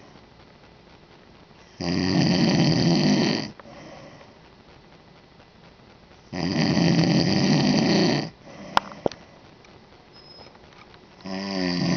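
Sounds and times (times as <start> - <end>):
man snoring: 1.8 - 4.1, 6.3 - 8.4, 11.2 - 11.9.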